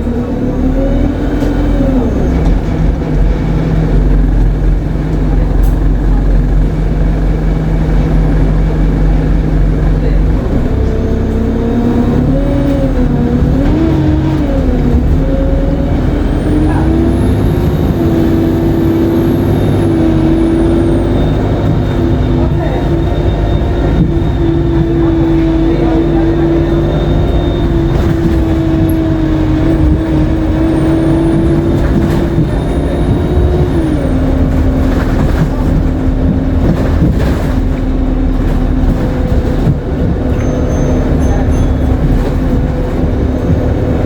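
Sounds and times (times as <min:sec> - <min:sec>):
bus diesel engine under load: 0:00.0 - 0:44.0
high turbocharger whine: 0:06.1 - 0:37.9.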